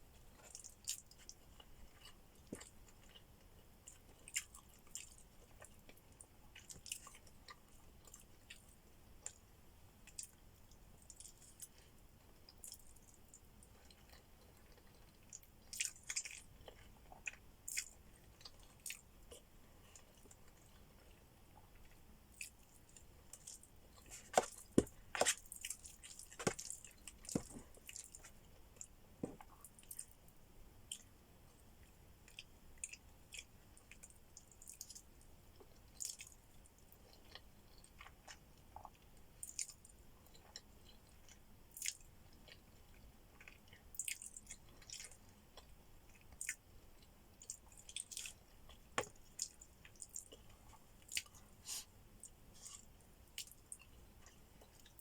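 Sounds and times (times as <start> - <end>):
person chewing with mouth sounds: 0.2 - 9.4, 11.0 - 30.2, 37.0 - 55.0
wet smacks and clicks: 22.4 - 30.2.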